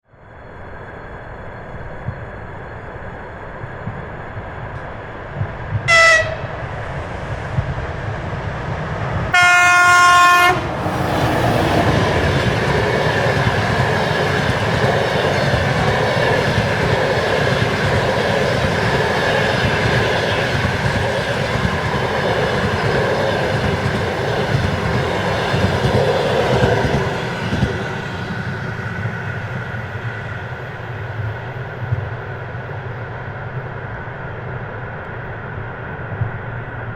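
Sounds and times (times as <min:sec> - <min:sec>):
train rumble: 0:00.4 - 0:36.9
locomotive horn: 0:05.9 - 0:06.6, 0:09.3 - 0:11.0.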